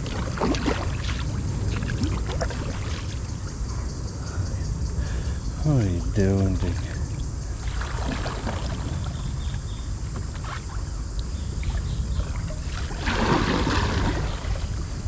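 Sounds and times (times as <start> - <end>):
kayak paddle strokes in water: 0.0 - 3.6, 6.2 - 15.0
paddle splashing: 0.0 - 3.7, 6.2 - 15.0
wind on microphone: 0.0 - 15.0.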